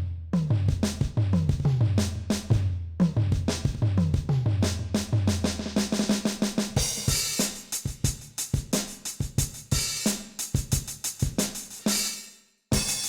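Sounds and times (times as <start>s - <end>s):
electronic drum fill on toms: 0.4s - 12.1s, 12.7s - 13.0s
kick and snare beat: 0.4s - 13.0s
crash cymbal: 11.7s - 13.0s.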